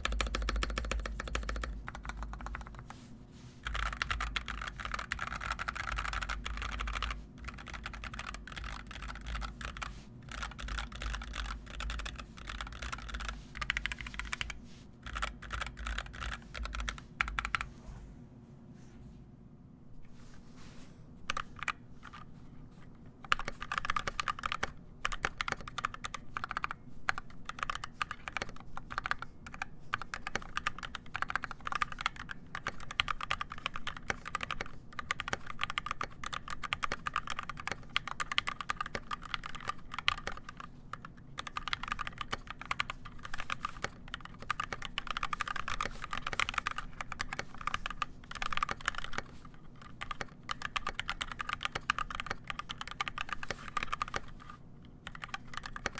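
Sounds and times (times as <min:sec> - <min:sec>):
typing on mechanical keyboard: 0:00.0 - 0:02.9, 0:03.6 - 0:17.6, 0:21.3 - 0:22.3, 0:23.2 - 0:55.9.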